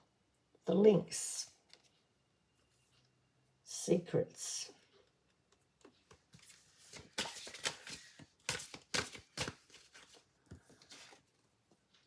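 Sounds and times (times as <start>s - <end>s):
cards shuffling: 6.4s - 11.3s.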